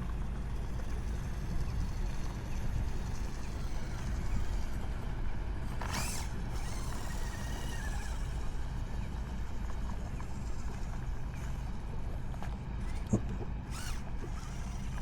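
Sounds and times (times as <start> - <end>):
faint high motor whine: 0.0 - 15.0.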